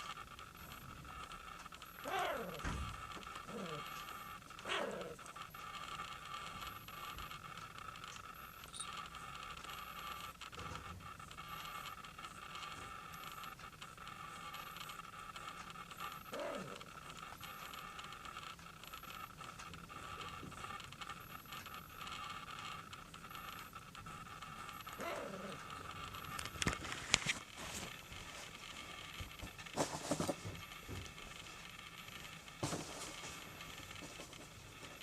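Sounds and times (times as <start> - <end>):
cat purring: 0.6 - 7.3, 16.0 - 17.8, 23.3 - 26.5.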